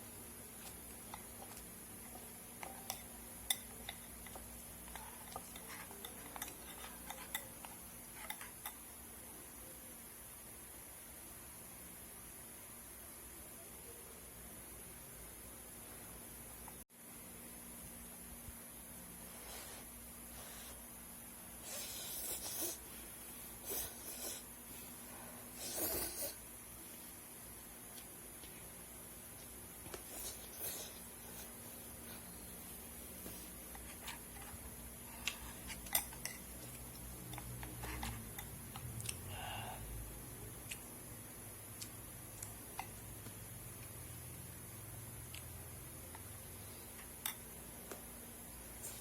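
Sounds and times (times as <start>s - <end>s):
faint steady hiss: 0.0s - 49.0s
utensils and dishes clicking: 35.4s - 38.9s.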